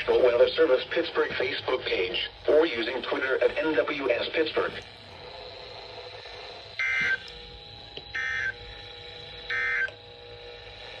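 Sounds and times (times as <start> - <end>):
faint steady hum: 0.0 - 11.0
warbling data tone bursts: 5.8 - 10.0.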